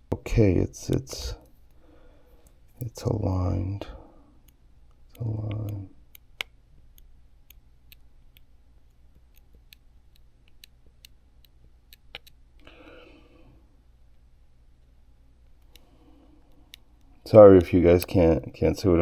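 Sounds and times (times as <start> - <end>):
faint regular ticking: 3.8 - 12.9.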